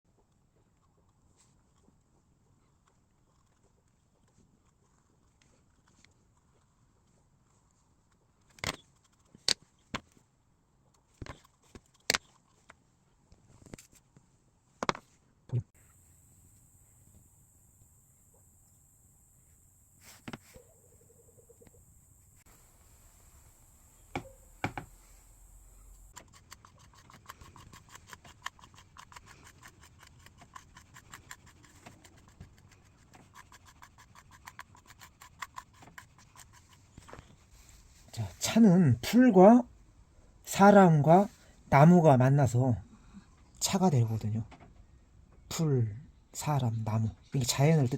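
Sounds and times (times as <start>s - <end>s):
hand tool scraping clay: 26.1s - 38.4s.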